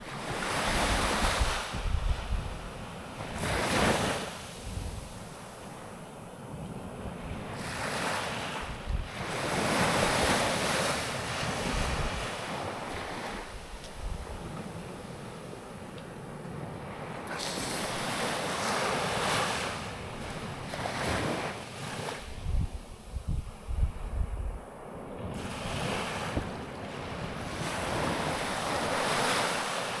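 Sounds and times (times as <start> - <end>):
sea waves breaking on beach: 0.0 - 24.0, 24.6 - 30.0
wind buffeting microphone: 0.0 - 29.8.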